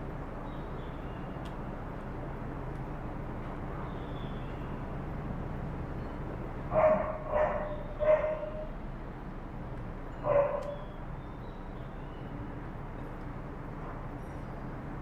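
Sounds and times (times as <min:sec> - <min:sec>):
steady low background hum: 0:00.0 - 0:15.0
dog barking: 0:06.7 - 0:08.7, 0:10.3 - 0:10.8.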